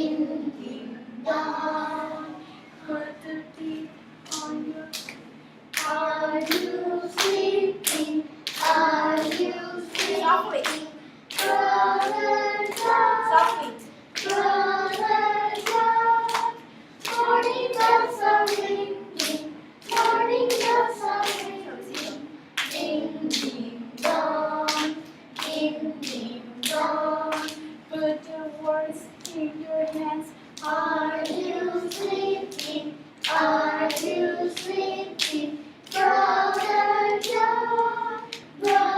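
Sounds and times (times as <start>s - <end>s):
hands clapping a beat: 4.3s - 27.7s, 30.6s - 37.5s, 38.2s - 38.9s
children singing: 11.3s - 38.9s.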